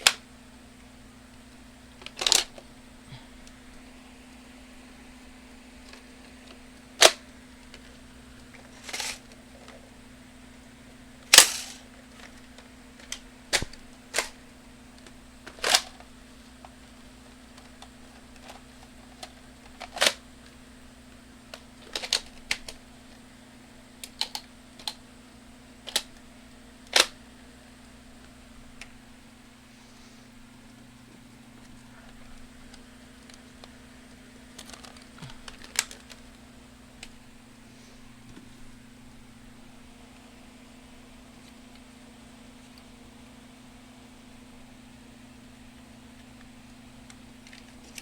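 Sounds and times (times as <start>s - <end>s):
plastic clicks of toy blaster reloading: 2.0s - 2.6s, 7.0s - 7.2s, 8.8s - 9.2s, 11.3s - 12.4s, 13.0s - 14.4s, 15.4s - 16.0s, 19.2s - 20.2s, 21.5s - 22.8s, 25.8s - 26.1s, 26.9s - 27.2s.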